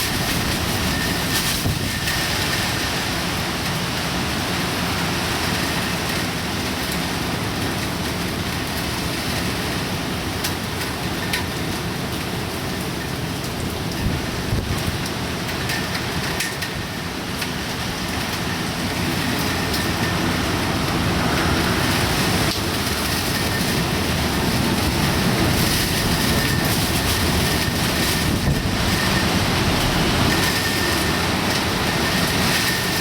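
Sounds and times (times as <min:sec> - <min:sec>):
heavy rain: 0:00.0 - 0:33.0
typhoon wind: 0:13.7 - 0:33.0.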